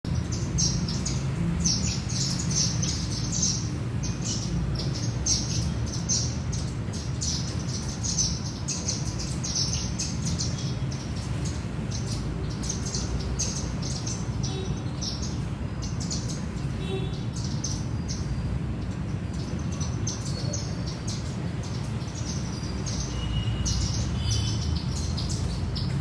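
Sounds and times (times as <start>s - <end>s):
flock of birds chirping: 0.1s - 26.0s.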